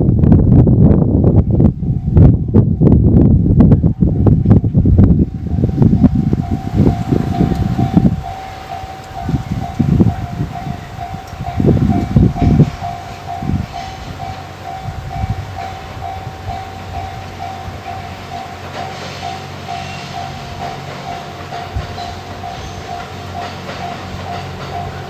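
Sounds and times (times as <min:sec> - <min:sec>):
train rumbling past: 0:00.0 - 0:25.0
heavy train wheel thumps: 0:04.4 - 0:25.0
level-crossing alarm clanging: 0:05.4 - 0:25.0.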